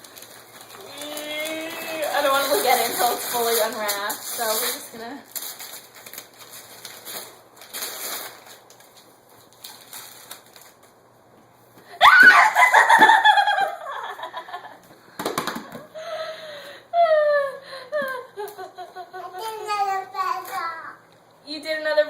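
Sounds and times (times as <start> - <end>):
wrapping paper rustling: 0.0 - 11.2.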